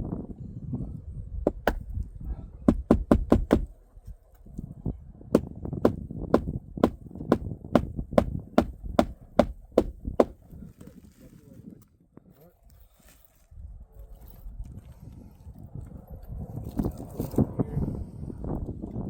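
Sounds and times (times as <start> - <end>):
hammer driving nails into shingles: 1.5 - 1.8, 2.7 - 3.7, 5.4 - 10.4.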